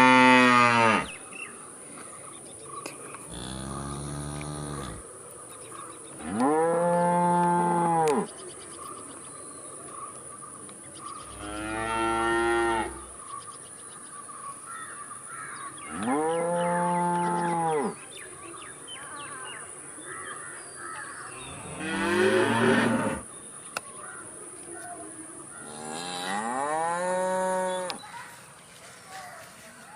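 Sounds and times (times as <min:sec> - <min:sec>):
cattle mooing: 0:03.3 - 0:05.0.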